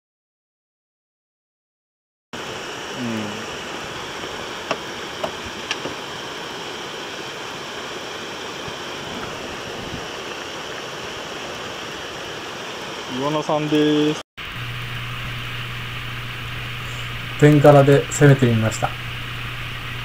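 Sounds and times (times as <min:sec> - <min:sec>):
water rushing over rocks: 0:02.4 - 0:14.2.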